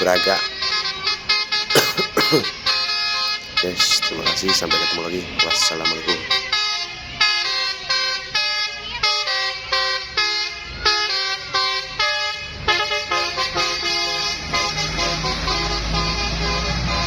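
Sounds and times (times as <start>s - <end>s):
musical air horns playing tune: 0.0s - 17.0s.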